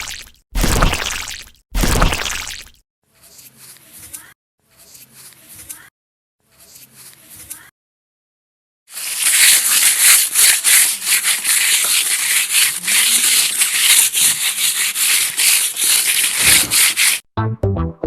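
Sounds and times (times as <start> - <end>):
gritty scraping and rattling: 9.1 - 17.2.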